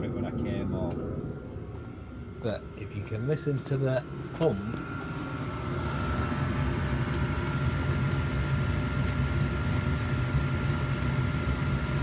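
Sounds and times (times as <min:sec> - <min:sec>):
heater running rumble: 0:00.0 - 0:12.0
fuel pump ticking: 0:04.8 - 0:12.0.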